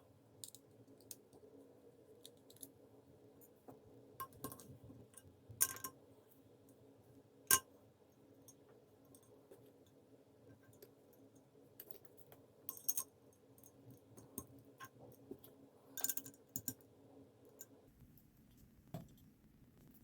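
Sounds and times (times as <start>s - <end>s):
metal parts clicking and clinking: 16.0s - 16.8s.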